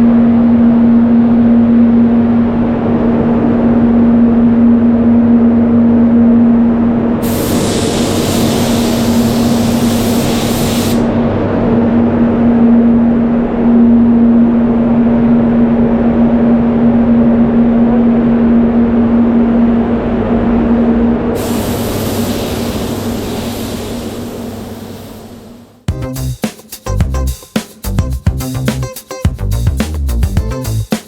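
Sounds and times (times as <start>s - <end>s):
fans humming: 0.0s - 26.0s
spray gun air hiss: 7.2s - 11.2s, 21.4s - 25.7s.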